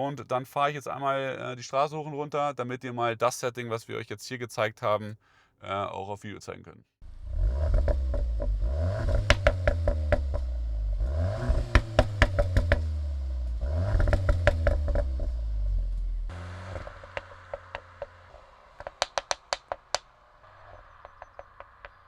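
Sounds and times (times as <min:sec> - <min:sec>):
car engine revving: 0:07.0 - 0:22.0
exhaust crackles and pops: 0:07.0 - 0:22.0.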